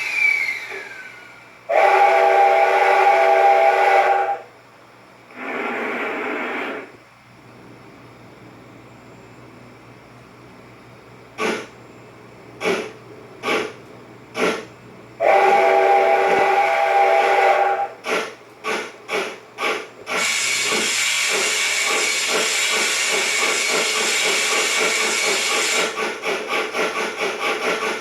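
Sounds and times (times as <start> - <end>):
steam whistle: 0.0 - 4.5, 15.2 - 18.0
steam locomotive exhaust chuffs: 0.0 - 4.7, 11.4 - 11.8, 12.5 - 28.0
hiss of steam: 15.2 - 28.0.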